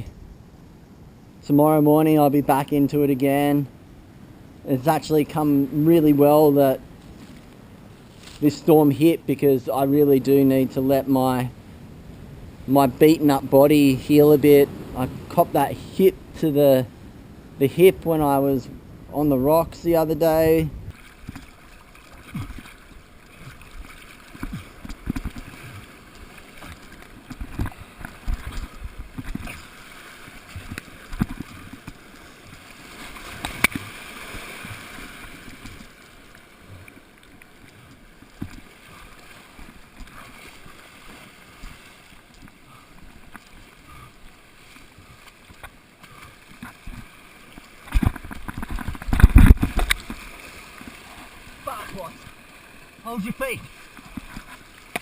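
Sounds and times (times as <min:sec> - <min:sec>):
wind buffeting microphone: 0:11.6 - 0:21.4
water washing: 0:19.2 - 0:55.0.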